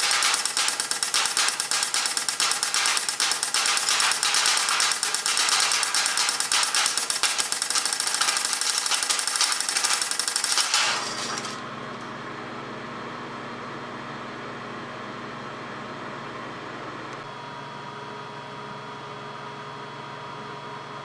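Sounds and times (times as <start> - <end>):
air cannon rapid firing: 0.0 - 11.6
steady hum: 0.0 - 12.0.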